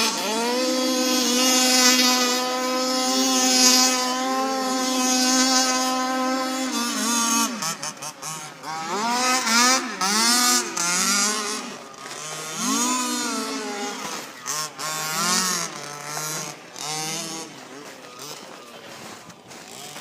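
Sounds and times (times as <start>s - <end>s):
small engine revving: 0.0s - 20.0s.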